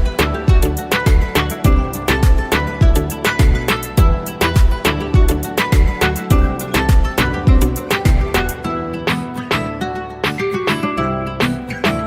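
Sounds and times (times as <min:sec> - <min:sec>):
deep kick drum: 0:00.0 - 0:08.5
background music with beat: 0:00.0 - 0:12.0.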